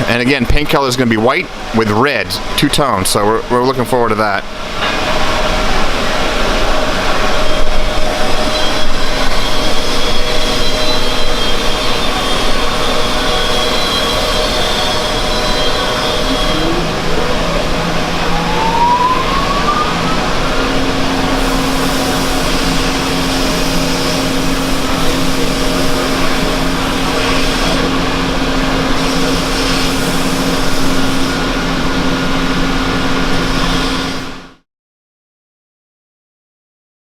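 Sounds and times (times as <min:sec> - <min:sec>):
motor hum: 0:04.4 - 0:33.3
spray booth rushing air: 0:04.6 - 0:34.4.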